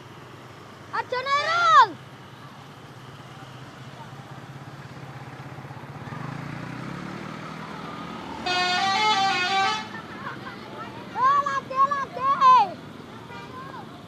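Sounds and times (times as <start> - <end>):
bus engine running: 0.0 - 14.0
multi-tone musical horn: 8.4 - 10.0.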